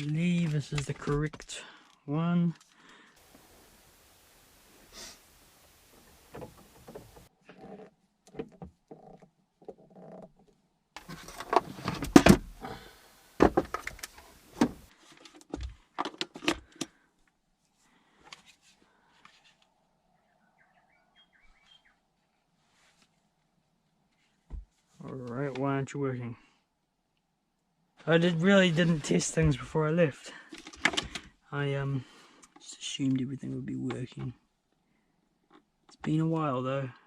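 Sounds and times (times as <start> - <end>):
cables and gear handled: 0.0 - 3.2, 6.2 - 12.8.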